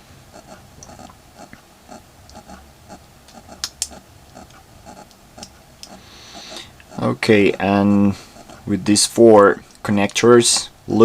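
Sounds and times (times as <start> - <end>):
small clicks and taps: 3.2 - 6.0
sharp connector clicks: 3.3 - 4.0.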